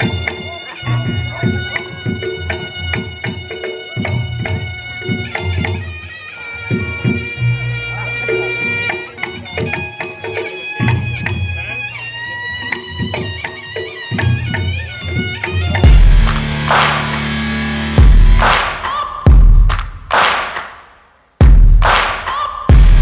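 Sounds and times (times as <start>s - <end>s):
shawm holding long notes: 0.0s - 20.4s
deep drum or gong notes: 15.8s - 17.2s, 17.9s - 18.6s
gong-chime beats: 15.8s - 19.6s.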